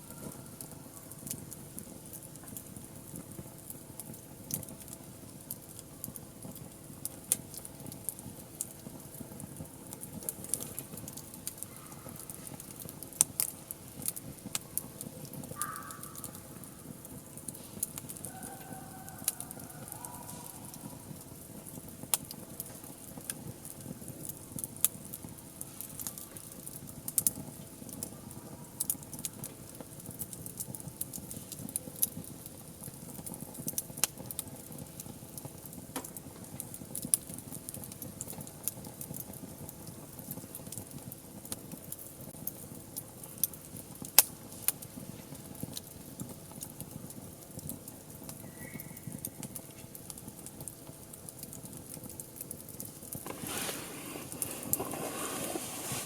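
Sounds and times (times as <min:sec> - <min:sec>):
wood fire crackling: 0:00.0 - 0:56.0
hiss of burning: 0:52.8 - 0:56.0.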